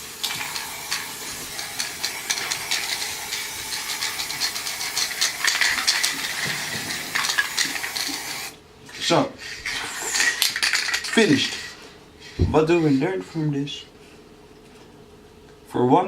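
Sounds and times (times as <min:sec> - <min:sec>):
spray paint can hissing: 0:00.0 - 0:08.6, 0:09.6 - 0:11.8.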